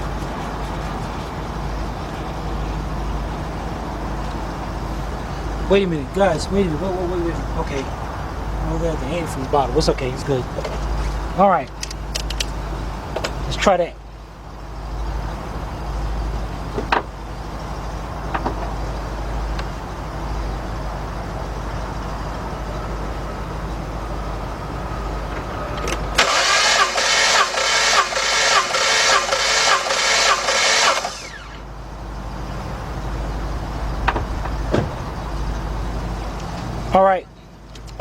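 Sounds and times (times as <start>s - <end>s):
engine starter cranking: 26.2s - 31.7s.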